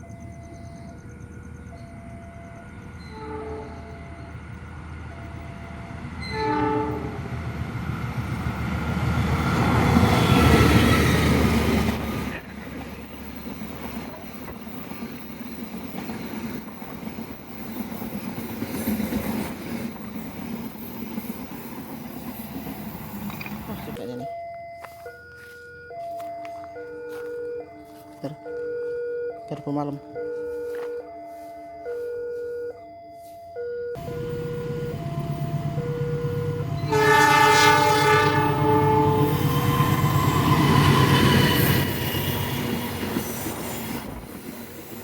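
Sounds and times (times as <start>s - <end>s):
train passing: 0.0s - 45.0s
train horn blasts: 3.1s - 4.0s, 6.2s - 7.3s, 34.0s - 41.2s
carriages rumbling and clattering: 7.4s - 24.4s.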